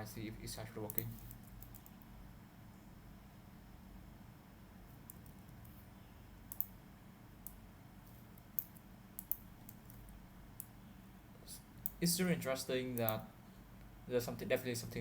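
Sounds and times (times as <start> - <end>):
low steady hum: 0.0 - 15.0
computer keyboard keystrokes: 6.5 - 6.7.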